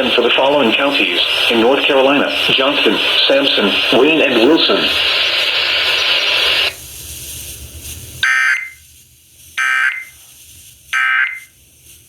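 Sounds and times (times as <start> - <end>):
buzzy data bursts: 0.0 - 6.8, 8.2 - 8.8, 9.6 - 10.2, 10.9 - 11.5
loud hissing noise: 0.0 - 12.0.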